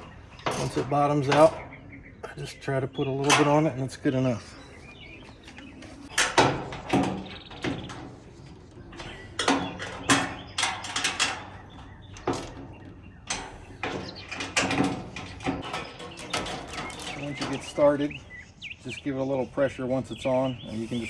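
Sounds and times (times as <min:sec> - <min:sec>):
sheet metal clanking and rattling: 0:00.0 - 0:01.8, 0:02.5 - 0:04.0, 0:05.8 - 0:18.3
hand tools knocking on metal: 0:00.4 - 0:01.7, 0:06.2 - 0:08.2, 0:09.0 - 0:18.2.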